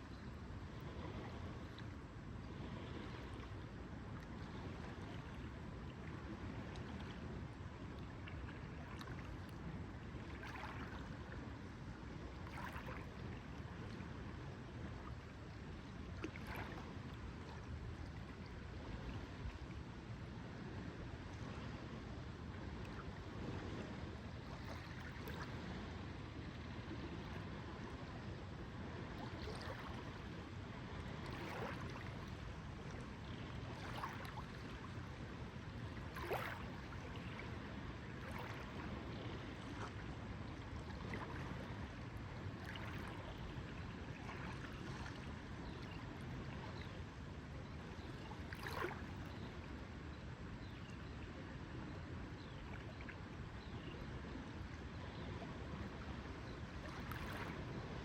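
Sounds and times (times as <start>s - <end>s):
waves lapping: 8.4s - 11.3s, 12.4s - 13.2s, 16.1s - 19.4s, 29.0s - 46.9s, 48.4s - 49.4s, 56.8s - 57.8s.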